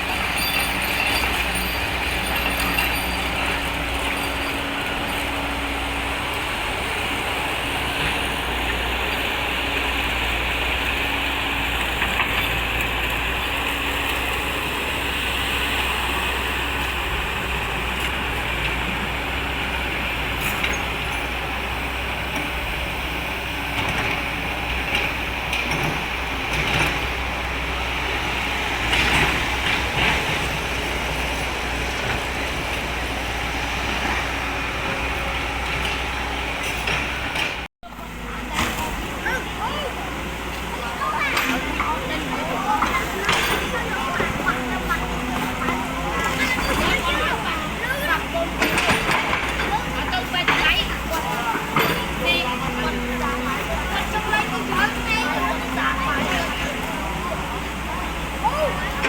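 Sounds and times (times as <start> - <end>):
excavator engine running: 0.0 - 59.0.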